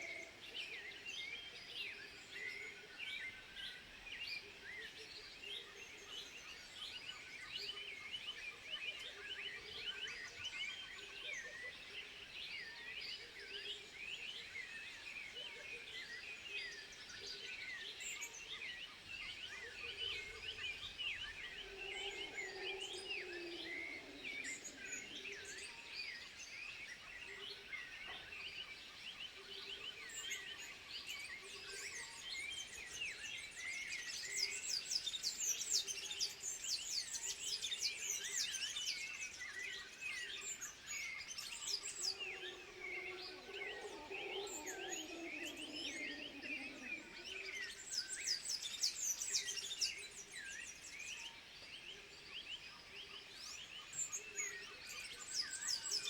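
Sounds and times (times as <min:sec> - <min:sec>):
chorus of high animal chirps: 0:21.3 - 0:25.6, 0:41.3 - 0:48.7.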